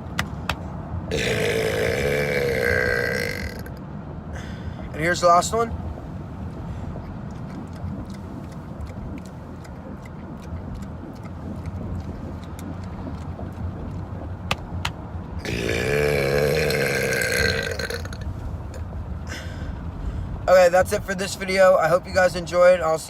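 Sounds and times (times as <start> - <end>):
car cabin rumble: 0.0 - 23.0
long loud burp: 1.1 - 3.8, 15.4 - 18.2.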